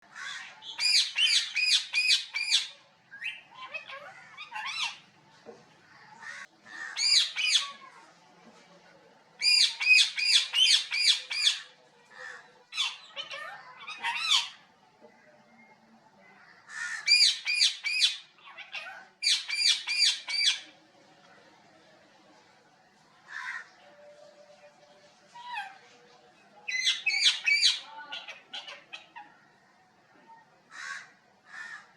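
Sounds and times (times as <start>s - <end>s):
parrot squawking: 0.2s - 5.0s, 6.8s - 7.9s, 9.4s - 11.7s, 12.7s - 14.6s, 16.8s - 20.7s, 26.7s - 29.4s.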